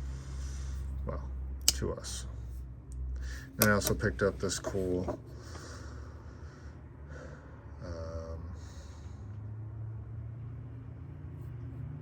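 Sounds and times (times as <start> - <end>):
man breathing through nose: 0.0 - 1.0
low room hum: 0.0 - 12.0.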